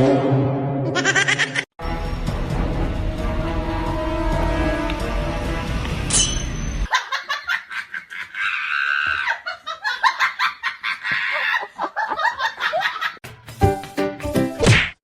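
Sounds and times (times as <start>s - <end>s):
music: 1.8s - 6.6s, 13.2s - 14.9s
people laughing: 6.9s - 13.2s.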